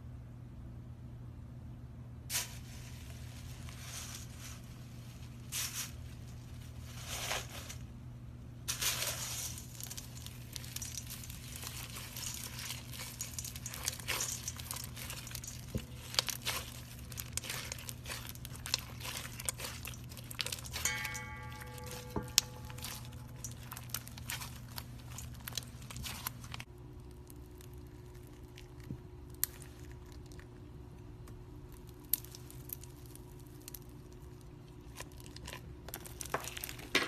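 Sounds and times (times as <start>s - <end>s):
steady low hum: 0.0s - 36.0s
slime crackling and popping: 8.7s - 30.6s, 31.7s - 36.9s.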